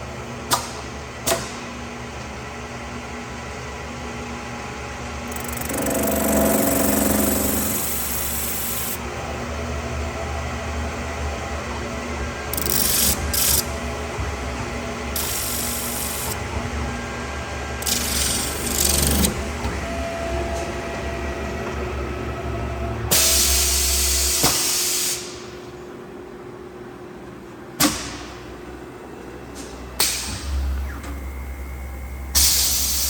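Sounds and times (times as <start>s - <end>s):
metal spinning lathe humming: 5.1s - 23.1s.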